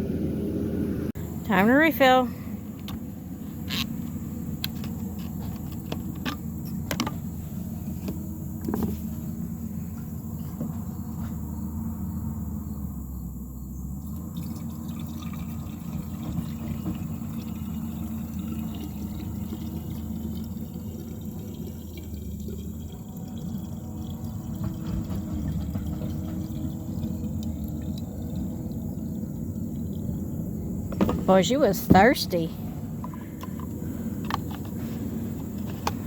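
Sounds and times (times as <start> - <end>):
fuel pouring into a tank: 14.0 - 32.2.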